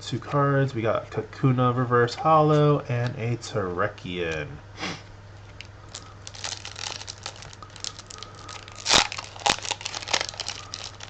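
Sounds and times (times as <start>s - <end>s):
foil wrapper crinkling: 5.6s - 11.0s.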